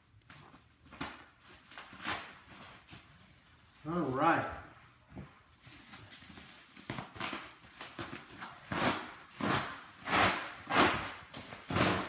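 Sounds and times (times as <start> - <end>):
packing wrap rustling: 5.4 - 12.0.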